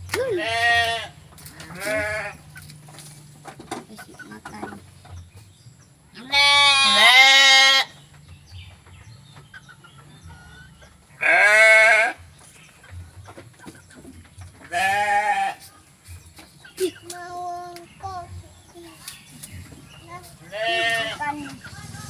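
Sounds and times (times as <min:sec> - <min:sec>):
sheep or goats bleating: 0:00.2 - 0:02.4, 0:06.2 - 0:08.0, 0:11.2 - 0:12.2, 0:14.7 - 0:15.6, 0:20.5 - 0:21.4.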